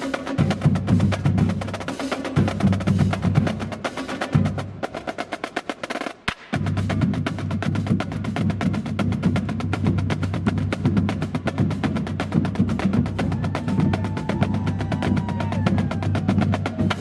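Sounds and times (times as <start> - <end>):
snare drum cadence: 5.6 - 6.7
bass drum: 6.4 - 17.0.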